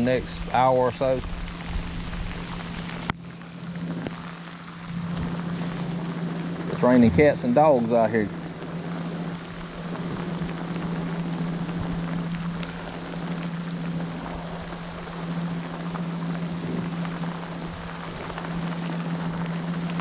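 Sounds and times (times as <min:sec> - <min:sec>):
heavy rain pouring: 0:00.0 - 0:20.0
steady low hum: 0:00.0 - 0:20.0.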